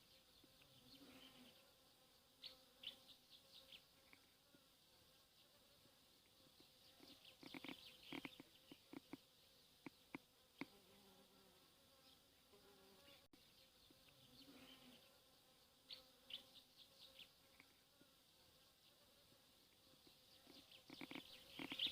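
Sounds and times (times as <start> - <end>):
insect buzzing: 0.0 - 21.9
short ticks and chirps: 7.0 - 9.2, 20.4 - 21.9.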